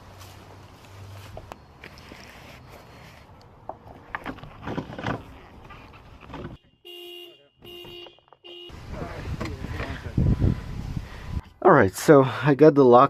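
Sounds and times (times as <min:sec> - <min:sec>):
car horn blasts: 0:06.6 - 0:08.9.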